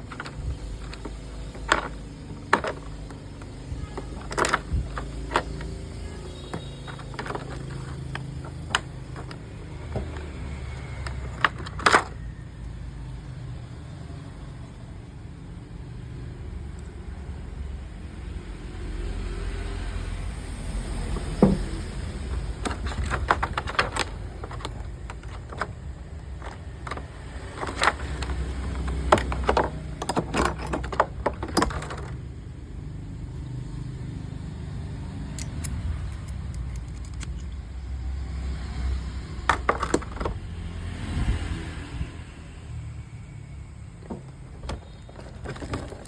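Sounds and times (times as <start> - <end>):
small hard parts clicking and rattling: 0.0 - 12.8, 20.8 - 33.9, 34.9 - 40.6, 43.8 - 46.0.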